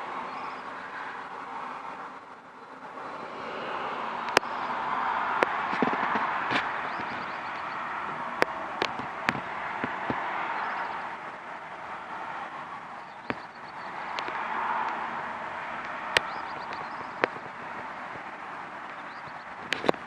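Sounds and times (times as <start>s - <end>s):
hum of passing vehicles: 0.0s - 20.0s
sharp clicks: 4.2s - 4.7s, 5.3s - 11.7s, 12.4s - 20.0s
bird trilling: 6.5s - 11.2s, 12.8s - 14.4s, 15.8s - 20.0s.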